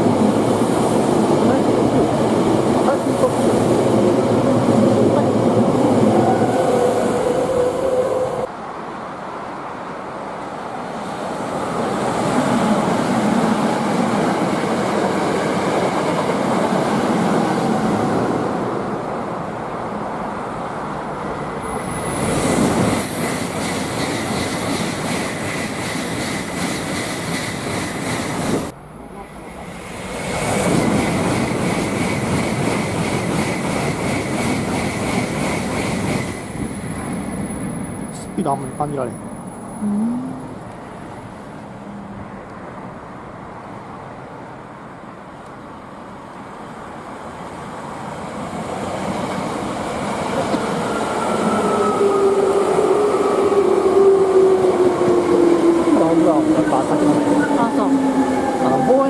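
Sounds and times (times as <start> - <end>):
trains rolling rumble: 0.0 - 39.8, 40.6 - 59.0
thin high tone: 39.8 - 40.7.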